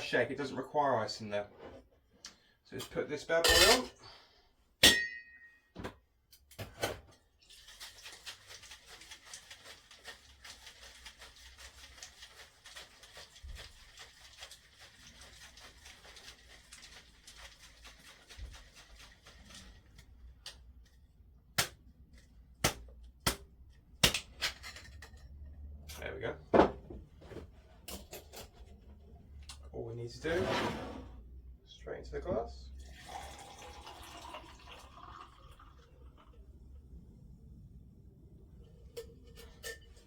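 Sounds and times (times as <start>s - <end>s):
liquid sloshing in shaker: 7.4s - 21.2s, 32.8s - 36.5s.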